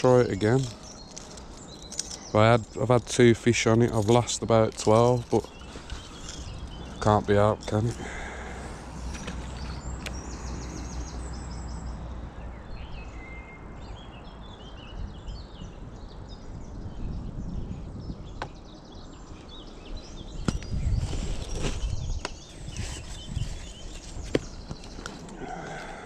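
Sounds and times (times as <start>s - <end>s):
small birds chirping: 0.0s - 26.0s
wind rumble: 14.9s - 18.9s, 19.9s - 24.7s.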